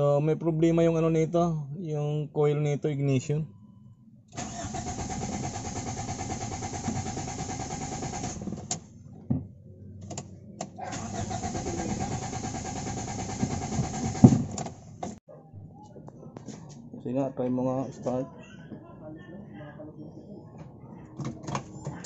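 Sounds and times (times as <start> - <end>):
car engine cranking: 4.4 - 8.9, 10.0 - 15.2.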